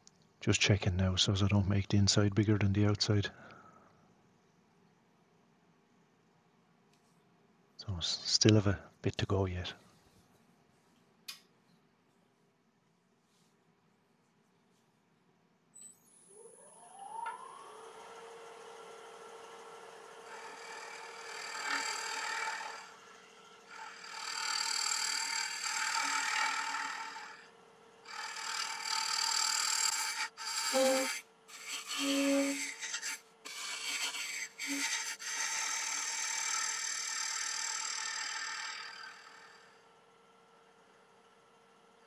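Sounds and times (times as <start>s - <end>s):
lathe humming: 16.4s - 39.7s
tool scraping wood on lathe: 19.2s - 27.5s, 28.1s - 39.7s.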